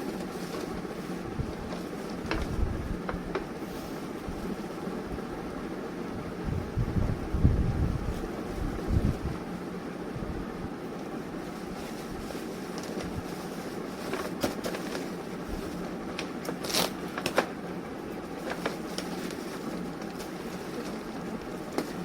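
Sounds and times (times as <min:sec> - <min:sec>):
plastic packaging crackling: 0:00.0 - 0:04.5, 0:11.4 - 0:22.0
steady background hum: 0:00.0 - 0:22.0.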